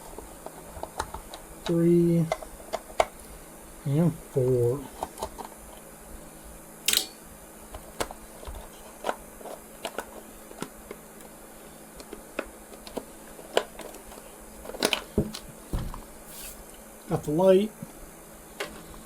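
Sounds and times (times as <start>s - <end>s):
plastic clatter: 12.0s - 16.0s.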